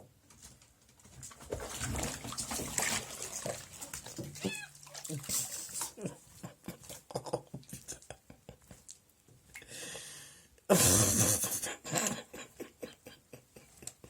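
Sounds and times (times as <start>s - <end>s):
dripping water: 1.5s - 6.0s.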